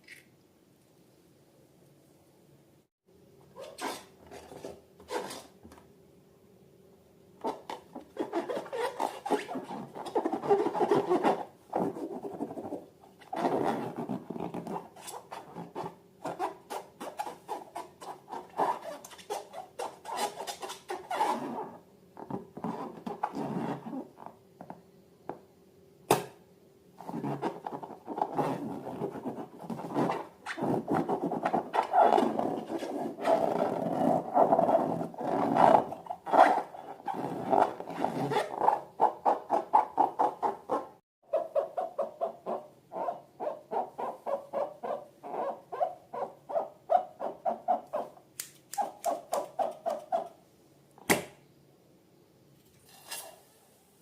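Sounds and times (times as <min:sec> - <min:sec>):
rubbing and scraping of balloons: 0:07.4 - 0:24.2, 0:27.0 - 0:48.1
sharp click: 0:48.4 - 0:49.5.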